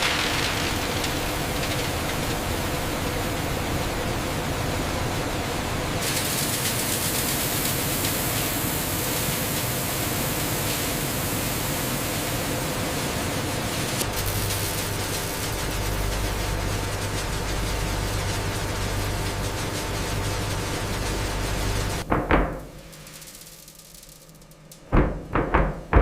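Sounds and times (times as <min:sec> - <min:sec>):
factory machinery hiss and rumble: 0:00.0 - 0:24.9
high hiss: 0:06.0 - 0:16.7, 0:22.8 - 0:24.6.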